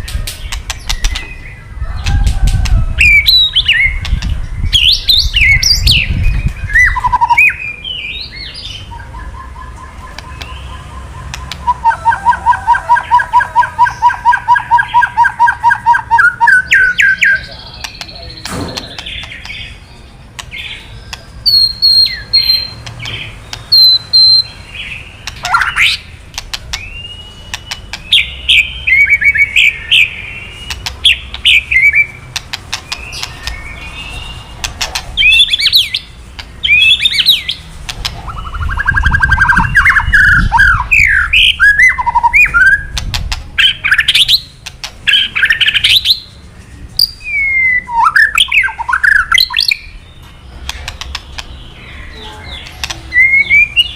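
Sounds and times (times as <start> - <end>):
bird singing whistled notes: 3.0 - 26.1, 26.7 - 32.2, 35.2 - 43.0, 43.6 - 50.7, 51.5 - 53.9
bird clicking rattles: 37.8 - 38.2, 44.6 - 45.1, 50.6 - 51.5.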